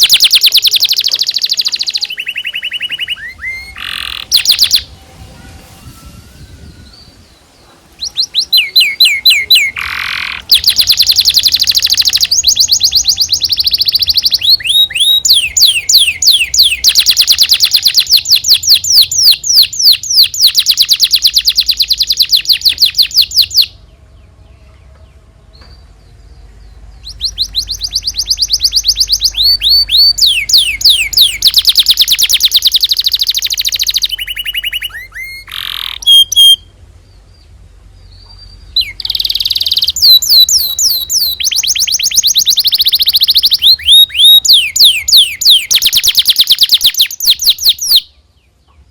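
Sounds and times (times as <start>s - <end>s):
canary trilling: 0.0s - 4.9s, 6.8s - 23.8s, 26.6s - 36.7s, 38.4s - 48.1s
bird chirps: 0.0s - 5.0s, 5.8s - 48.9s.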